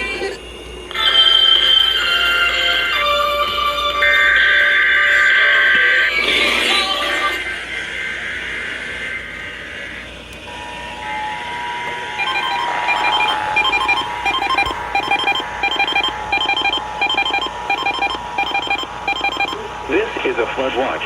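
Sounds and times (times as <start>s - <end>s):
two-tone alert signal: 12.2s - 19.6s
fast electronic beeping: 12.2s - 19.7s.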